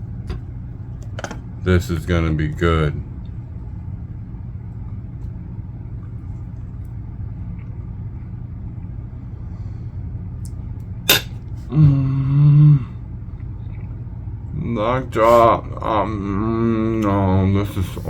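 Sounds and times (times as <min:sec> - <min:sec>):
steady low hum: 0:00.0 - 0:18.0
man humming with enjoyment: 0:11.7 - 0:13.0.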